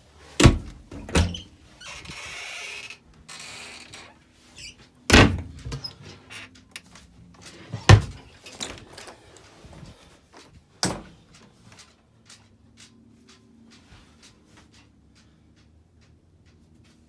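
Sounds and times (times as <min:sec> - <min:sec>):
doors banging shut: 0:00.4 - 0:02.2, 0:05.1 - 0:06.2, 0:07.7 - 0:09.2, 0:10.8 - 0:11.2
latches clicking: 0:10.8 - 0:11.2.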